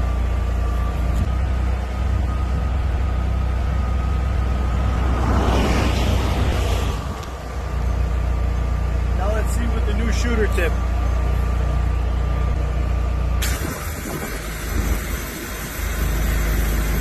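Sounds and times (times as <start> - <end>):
pressure washer engine droning: 0.0 - 17.0
broad hissing rush: 13.4 - 17.0.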